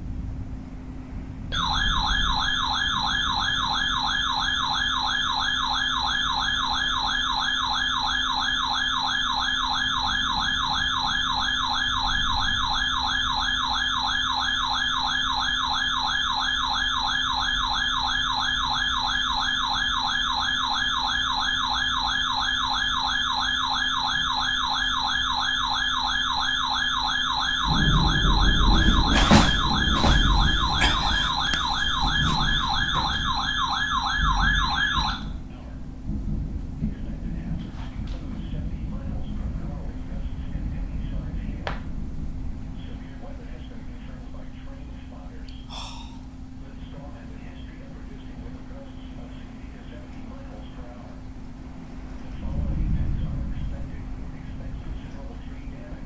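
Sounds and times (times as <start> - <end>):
electronic siren alert tone: 1.6 - 35.4.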